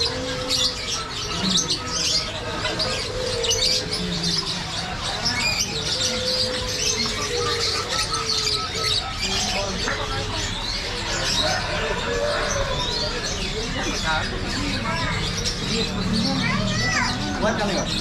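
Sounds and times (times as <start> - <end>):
songbirds chirping: 0.0 - 18.0.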